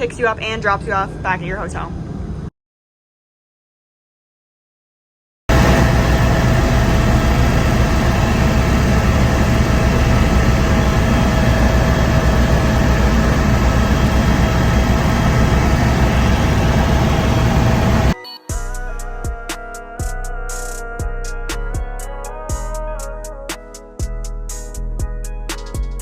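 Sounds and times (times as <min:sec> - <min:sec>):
engine throbbing and whining: 0:05.5 - 0:18.2.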